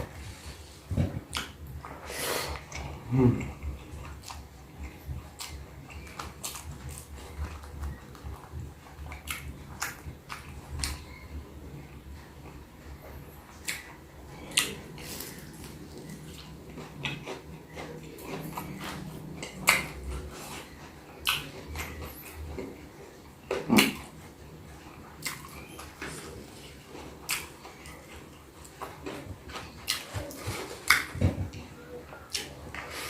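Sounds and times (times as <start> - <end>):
person chewing food: 0.0 - 33.0
sharp mouth clicks and smacks: 1.3 - 1.6, 13.6 - 13.9, 19.4 - 20.0, 21.2 - 21.5, 27.3 - 28.0, 29.9 - 31.2.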